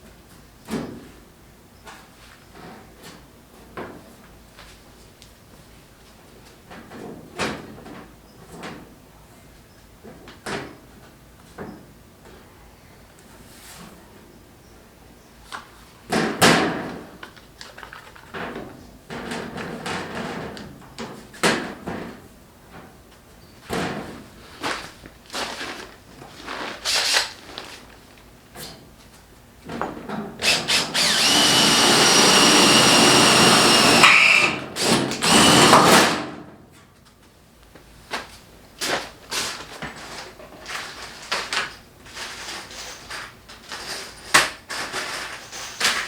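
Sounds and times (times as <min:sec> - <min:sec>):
power tool motor running: 0:30.4 - 0:36.3.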